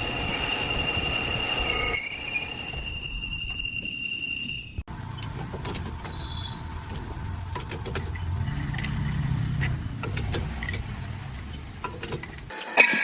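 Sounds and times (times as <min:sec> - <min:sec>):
low machine rumble: 0:04.6 - 0:12.5.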